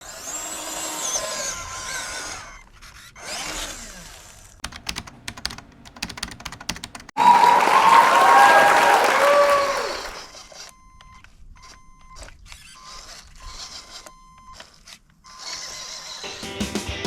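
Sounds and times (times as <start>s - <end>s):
small electric motor whirring: 0.0s - 4.6s, 11.6s - 16.3s
sharp clicks: 4.6s - 7.2s.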